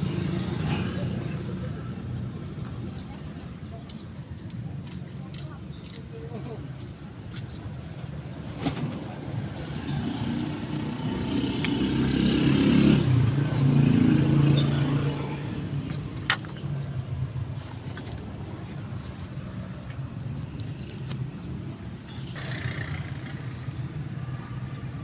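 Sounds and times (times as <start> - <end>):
motor vehicle passing by: 8.6 - 16.1, 22.2 - 24.6.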